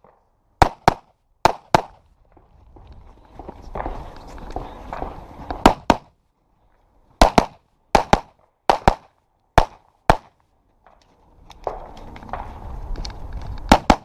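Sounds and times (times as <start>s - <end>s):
pistol shots in pairs: 0.0s - 2.0s, 5.6s - 6.1s, 7.2s - 10.4s, 13.7s - 14.0s.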